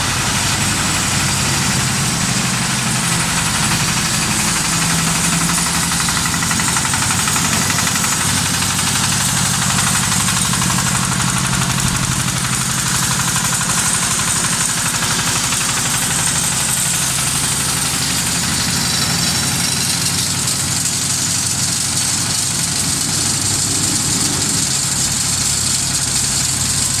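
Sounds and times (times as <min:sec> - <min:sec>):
baler engine humming and pulsing: 0:16.0 - 0:27.0.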